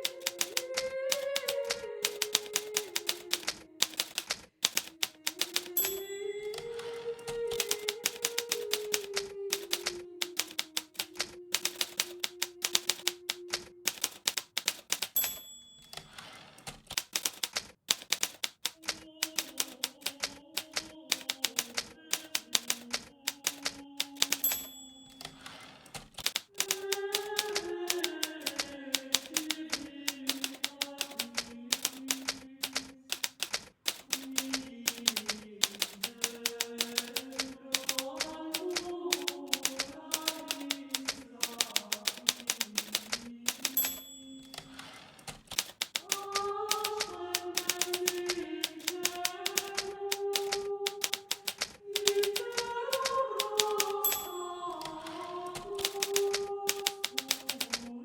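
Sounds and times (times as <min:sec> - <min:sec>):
typewriter bell ding: 0:00.0 - 0:01.2, 0:02.0 - 0:13.2, 0:13.9 - 0:18.6, 0:23.4 - 0:29.5, 0:30.1 - 0:32.2, 0:35.0 - 0:46.2, 0:53.4 - 0:57.6
typewriter typing: 0:00.0 - 0:58.0
soft slow melody: 0:05.5 - 0:10.6.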